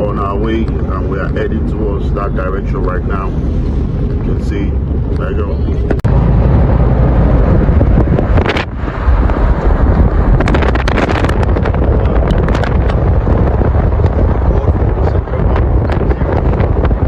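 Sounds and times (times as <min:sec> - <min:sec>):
road and engine rumble: 0:00.0 - 0:17.0
wind buffeting microphone: 0:00.0 - 0:17.0.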